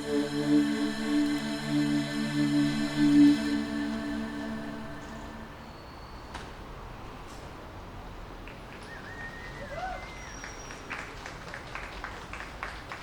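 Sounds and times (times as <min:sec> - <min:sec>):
steady outdoor hiss: 0:00.0 - 0:13.0
wavering whistled call: 0:08.8 - 0:10.9.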